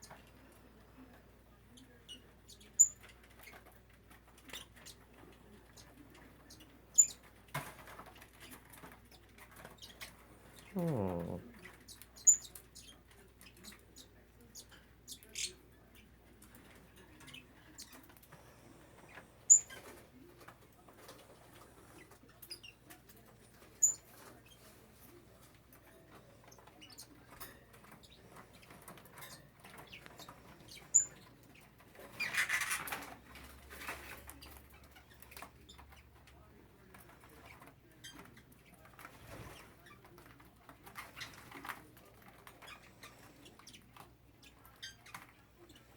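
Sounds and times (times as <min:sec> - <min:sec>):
birds rustling and clicking: 0:00.0 - 0:45.9
high bird chirps: 0:19.5 - 0:19.9.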